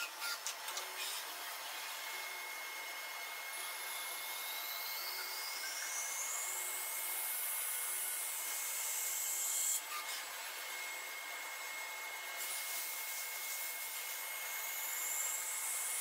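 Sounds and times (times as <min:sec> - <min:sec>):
machine whine rising in pitch: 0:00.0 - 0:09.2.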